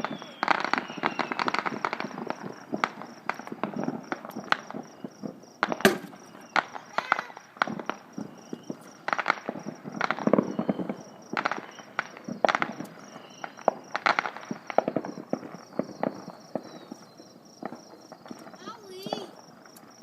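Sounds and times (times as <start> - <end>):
fireworks bangs and crackling: 0.0 - 20.0.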